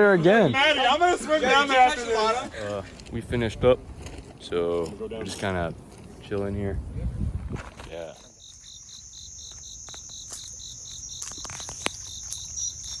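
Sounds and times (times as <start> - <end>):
insects chirping: 7.9 - 13.0
high-pitched insect buzz: 8.3 - 13.0.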